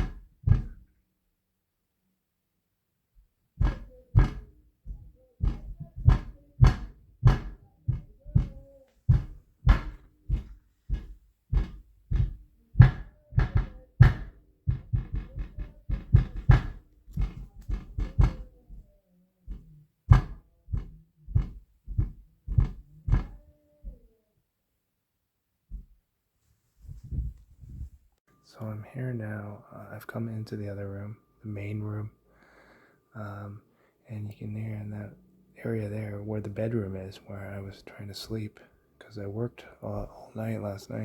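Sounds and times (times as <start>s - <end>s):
heavy footsteps on floor: 3.6s - 18.8s, 19.5s - 24.0s.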